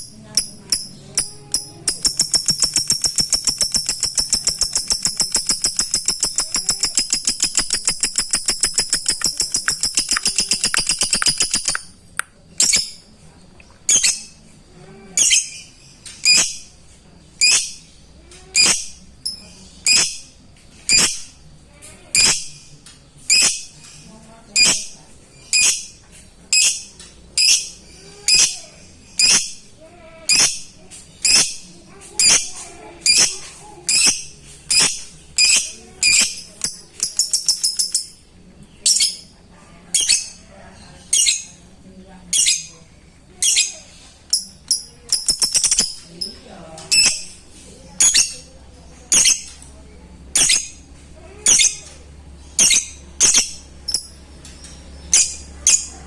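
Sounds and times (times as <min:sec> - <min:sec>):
bird rapid ticks: 0:00.4 - 0:11.9, 0:34.7 - 0:38.1, 0:44.3 - 0:46.0.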